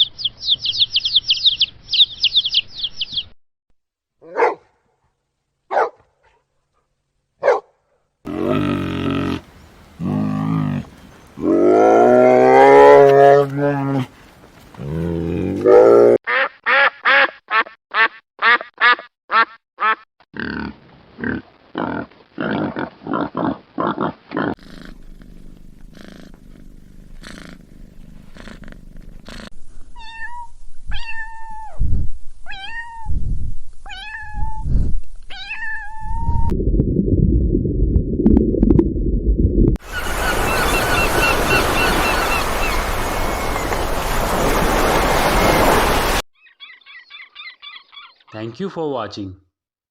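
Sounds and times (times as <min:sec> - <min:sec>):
animal calls: 0:08.3 - 0:14.2, 0:39.8 - 0:43.8, 0:46.4 - 0:48.4
dense low rumbling noise: 0:36.3 - 0:39.8.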